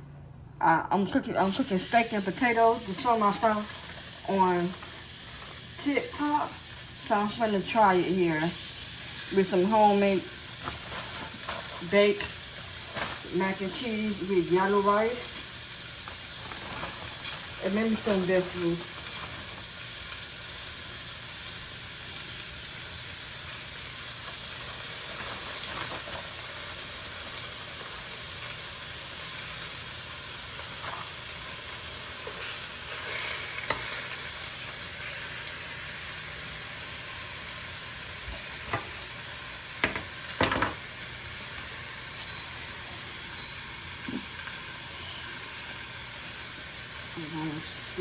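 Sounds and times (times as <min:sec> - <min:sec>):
food sizzling in a frying pan: 0:01.4 - 0:48.0.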